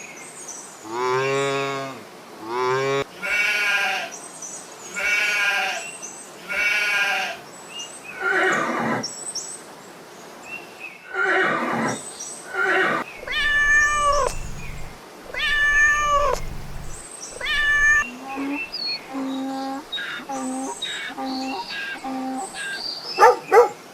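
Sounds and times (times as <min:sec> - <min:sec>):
animals bleating: 0:03.1 - 0:04.1, 0:06.4 - 0:07.4, 0:13.2 - 0:22.6
animal calls falling in pitch: 0:13.2 - 0:18.6.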